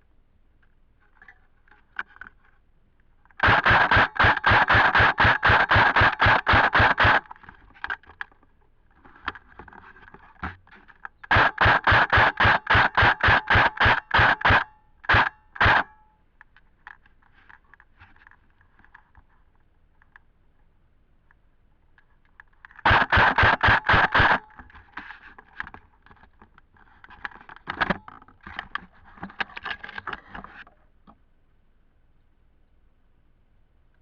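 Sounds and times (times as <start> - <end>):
gun clicks: 3.2 - 8.4, 9.0 - 19.2, 22.2 - 30.6
airsoft gun shots: 3.4 - 7.3, 11.3 - 16.0, 22.8 - 24.6.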